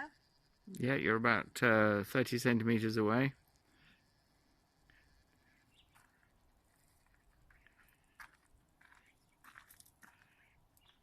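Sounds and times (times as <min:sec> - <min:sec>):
faint clicks and rustles: 0:03.4 - 0:11.0.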